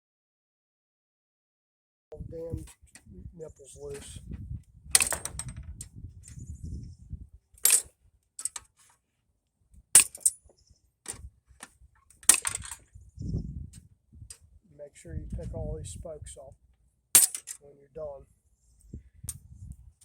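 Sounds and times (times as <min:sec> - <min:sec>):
metal clinking: 0:05.0 - 0:05.7, 0:07.6 - 0:08.7, 0:10.0 - 0:10.4, 0:12.2 - 0:12.8, 0:17.2 - 0:17.6
cutters snapping wheel spokes: 0:11.1 - 0:12.8.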